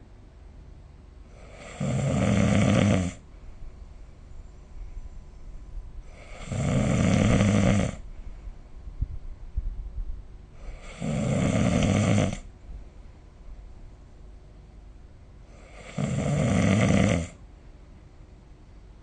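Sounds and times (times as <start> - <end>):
person snoring: 1.3 - 3.2, 6.1 - 8.0, 10.6 - 12.5, 15.5 - 17.4
quiet breathing: 4.4 - 9.1, 10.5 - 12.6, 15.4 - 17.4.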